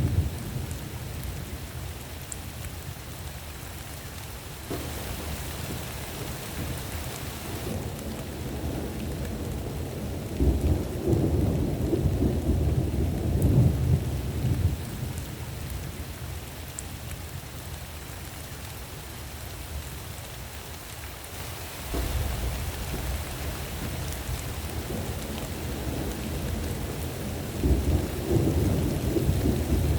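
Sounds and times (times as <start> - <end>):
steady rain: 0.0 - 29.9
thunder rumbling: 4.7 - 15.2, 21.8 - 29.9.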